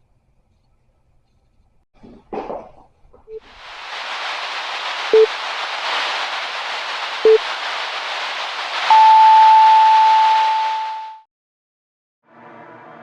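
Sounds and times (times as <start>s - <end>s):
static hiss: 3.4s - 10.7s.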